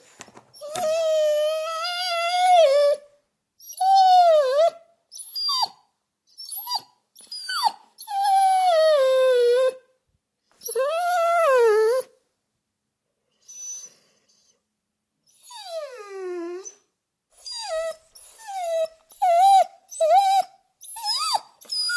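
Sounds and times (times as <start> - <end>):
dog whimpering: 0.6 - 9.8, 10.6 - 12.2, 15.3 - 21.9.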